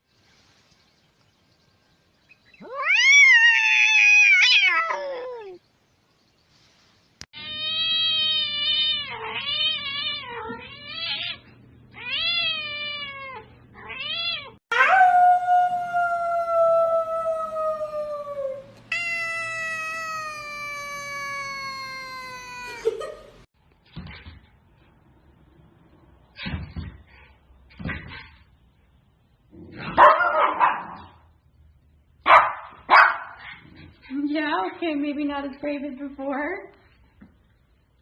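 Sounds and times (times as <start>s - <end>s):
cat yowling: 2.6s - 5.6s, 7.4s - 11.4s, 12.0s - 15.0s, 18.9s - 23.0s.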